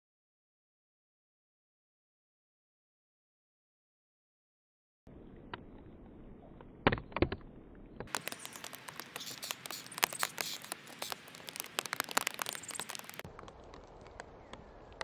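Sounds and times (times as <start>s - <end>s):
birds pecking clicks and taps: 8.1s - 15.0s.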